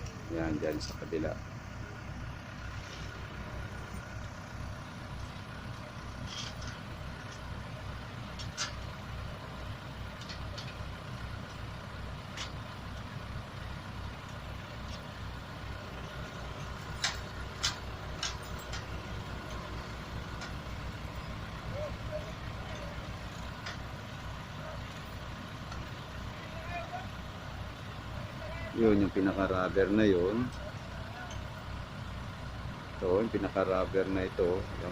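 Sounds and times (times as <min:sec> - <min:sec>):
diesel engine running at low revs: 0:00.0 - 0:34.9
sharp metallic clinks: 0:16.5 - 0:23.0.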